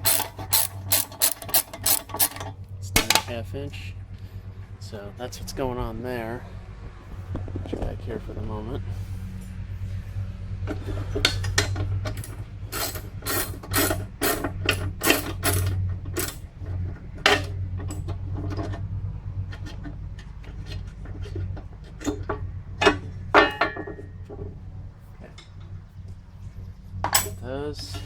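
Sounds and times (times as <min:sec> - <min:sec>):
ratchet wrench clicking: 0:00.0 - 0:02.5, 0:12.2 - 0:16.3
steady low hum: 0:00.0 - 0:28.0.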